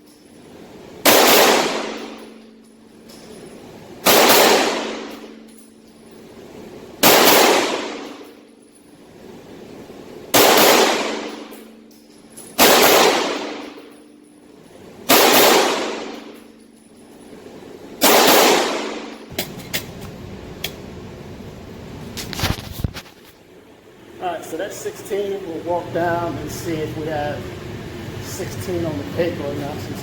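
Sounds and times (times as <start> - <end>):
pistol shots indoors: 0.0 - 19.9.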